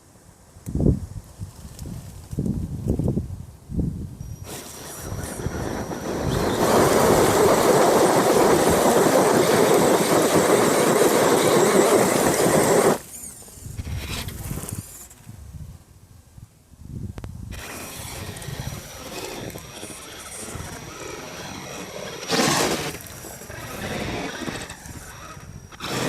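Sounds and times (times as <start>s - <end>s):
rc truck motor rushing: 4.2s - 15.4s, 17.5s - 26.0s
scattered rattling: 4.4s - 15.2s.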